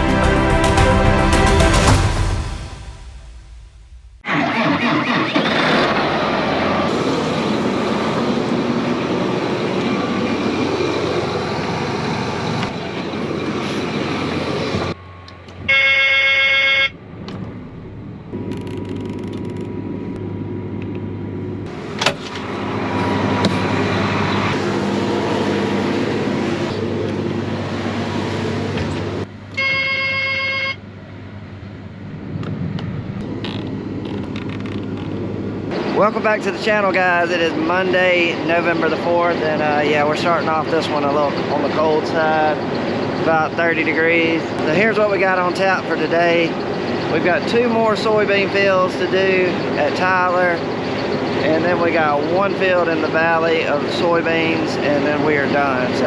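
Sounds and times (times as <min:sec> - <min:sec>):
short horn blasts: 0:00.0 - 0:04.0
vehicle engines running: 0:05.9 - 0:15.9, 0:16.8 - 0:29.6, 0:31.2 - 0:56.0.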